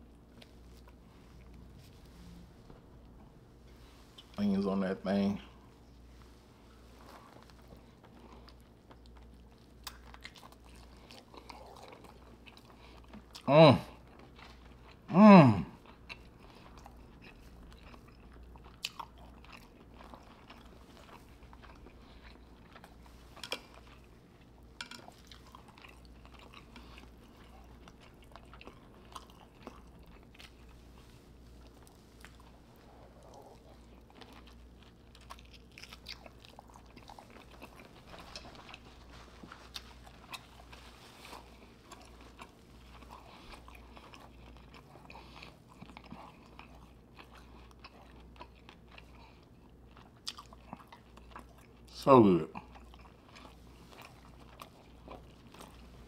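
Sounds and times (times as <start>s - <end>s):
faint low hum: 0.0s - 56.0s
person chewing: 6.7s - 56.0s.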